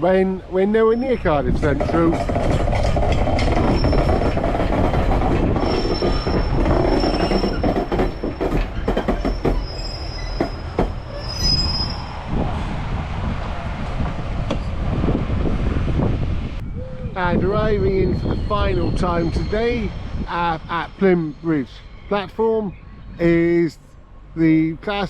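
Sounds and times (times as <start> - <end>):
train rumbling at low speed: 0.0 - 25.0
wheels clicking over rail joints: 1.0 - 11.4
wheel flange squeal: 2.5 - 12.2, 17.9 - 20.2.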